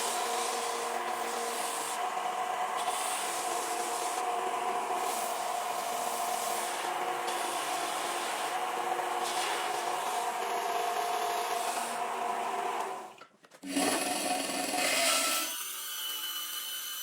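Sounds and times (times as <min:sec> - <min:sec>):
electric grinder grinding metal: 0:00.0 - 0:17.0.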